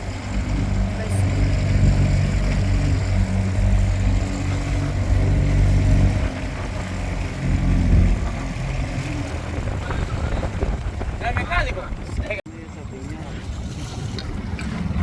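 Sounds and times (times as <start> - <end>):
boat engine running: 0.0 - 15.0.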